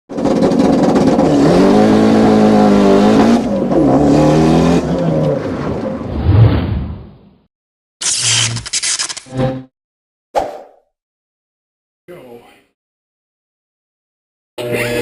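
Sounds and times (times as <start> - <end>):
racing car engine revving: 0.1 - 6.3.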